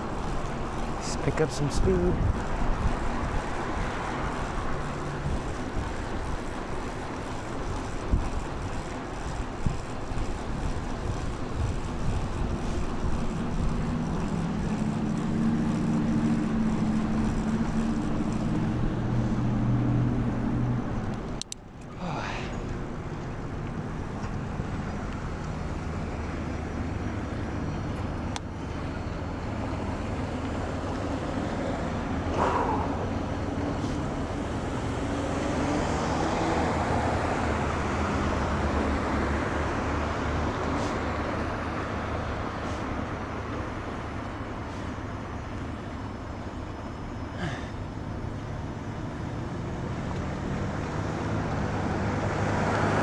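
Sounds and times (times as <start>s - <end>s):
bicycle road rush: 0.0s - 53.0s
car traffic: 0.0s - 53.0s
vehicle passing: 11.8s - 26.9s, 29.8s - 43.3s, 49.2s - 53.0s.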